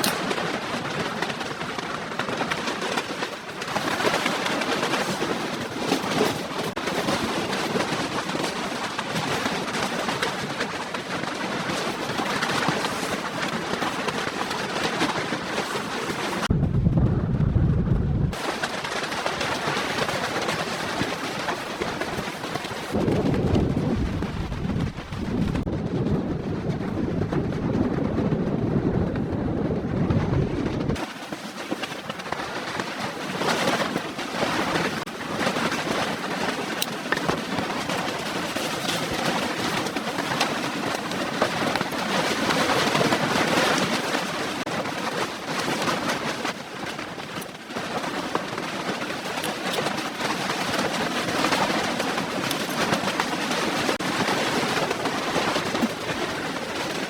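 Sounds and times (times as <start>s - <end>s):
strong blizzard wind: 15.2s - 31.1s.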